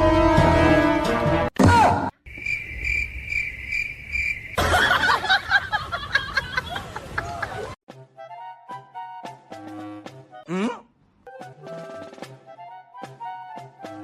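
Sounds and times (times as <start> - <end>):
cricket chirping: 2.2 - 5.6.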